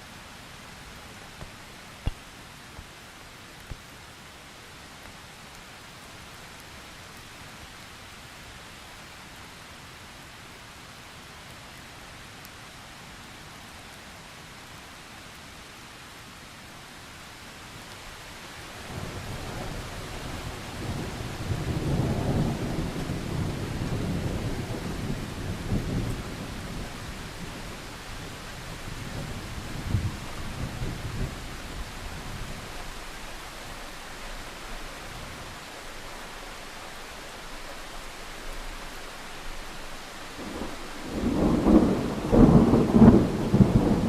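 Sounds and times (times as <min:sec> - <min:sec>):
heavy rain: 0:00.0 - 0:44.0
thunder rumbling: 0:18.9 - 0:33.5, 0:40.3 - 0:44.0.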